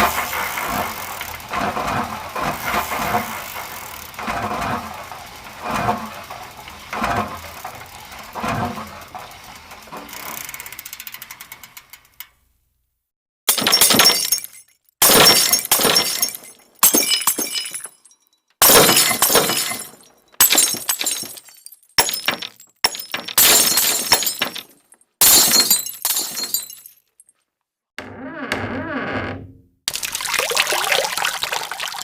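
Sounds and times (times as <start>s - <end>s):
glass smashing: 13.5s - 27.3s.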